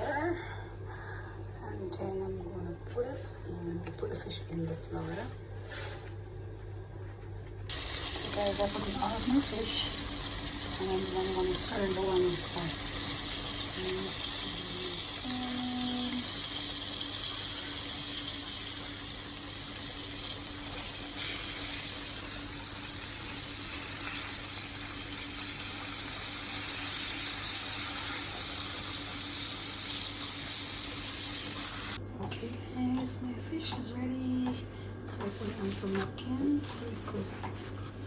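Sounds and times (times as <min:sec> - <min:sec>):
fish sizzling in frying oil: 0:07.7 - 0:32.0.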